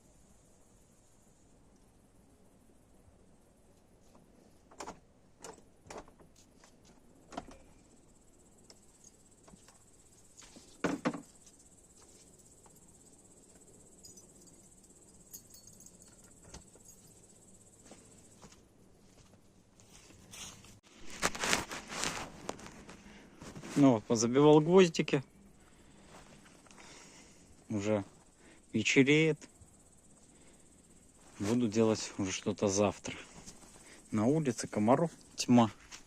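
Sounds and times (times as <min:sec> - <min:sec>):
crickets trilling: 0:00.0 - 0:36.0
knocks and thuds: 0:10.8 - 0:11.3.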